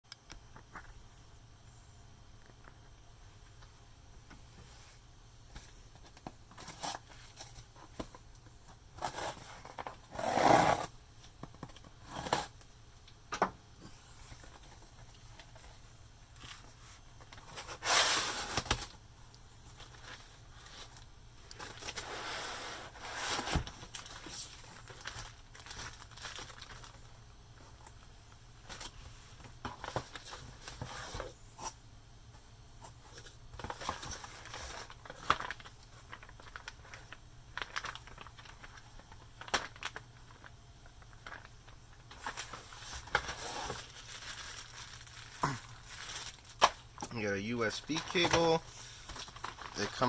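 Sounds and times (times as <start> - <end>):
cardboard box scraping and rustling: 9.0 - 10.9.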